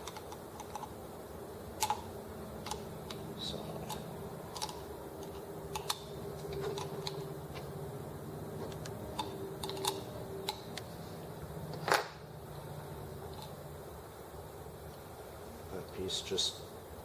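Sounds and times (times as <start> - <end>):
small metal parts clicking: 0.0 - 0.9, 3.8 - 7.3, 8.7 - 10.8
low steady hum: 0.0 - 17.0.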